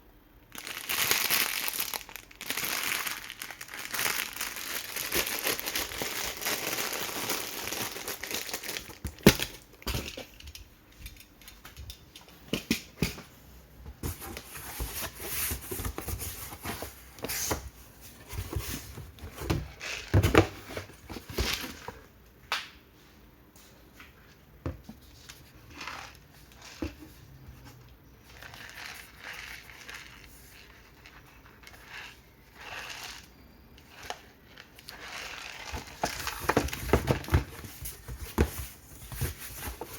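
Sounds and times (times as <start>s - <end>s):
plastic packaging crinkling: 0.5s - 10.6s, 33.9s - 39.9s.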